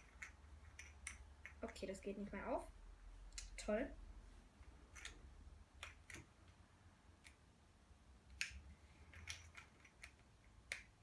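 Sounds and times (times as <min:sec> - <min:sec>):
plastic parts clicking: 0:08.3 - 0:11.0.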